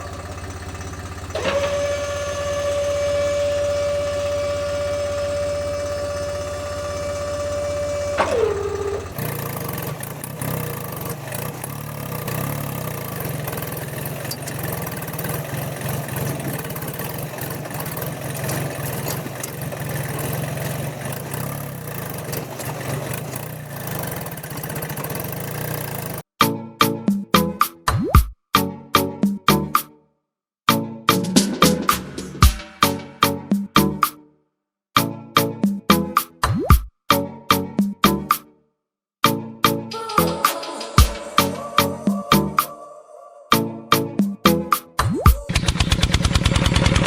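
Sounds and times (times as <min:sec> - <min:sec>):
rattling engine-like running with clicks: 0:00.0 - 0:26.3, 0:45.2 - 0:47.0
small motor whining: 0:00.0 - 0:26.3.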